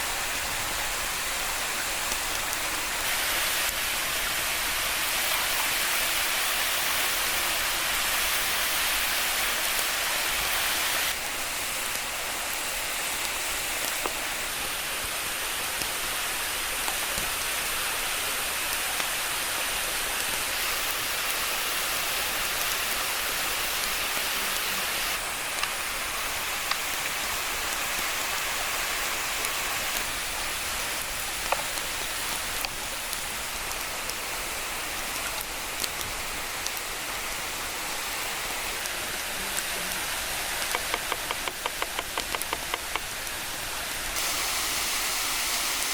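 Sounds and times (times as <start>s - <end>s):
waterfall rushing: 0.0s - 13.6s, 37.6s - 45.9s.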